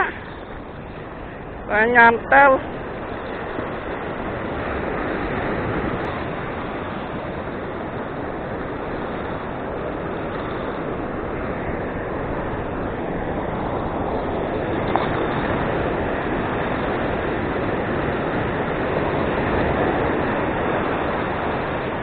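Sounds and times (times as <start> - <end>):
beach surf: 0.0 - 22.0
wind on microphone: 0.0 - 22.0.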